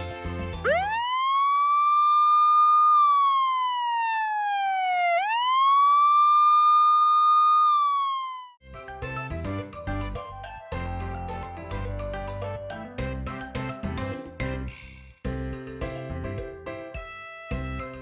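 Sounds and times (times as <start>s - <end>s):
music: 0.0s - 1.0s, 8.6s - 18.0s
wailing siren sound effect: 0.6s - 8.6s.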